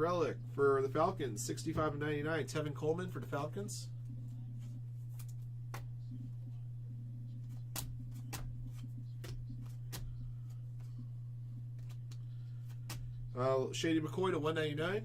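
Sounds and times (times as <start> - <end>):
low electrical hum: 0.0 - 15.0
trading cards being flipped: 4.2 - 6.2, 7.3 - 13.2
card stock clicks and snaps: 7.4 - 11.0, 11.8 - 13.1.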